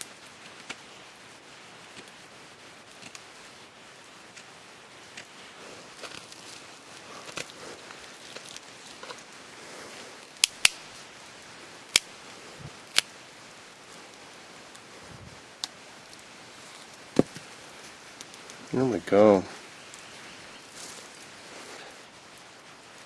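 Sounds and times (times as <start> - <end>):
faint ticking and scraping: 0.0 - 23.0
hand tools cracking wood: 2.9 - 3.3, 4.3 - 11.0, 11.9 - 13.2, 15.6 - 18.7.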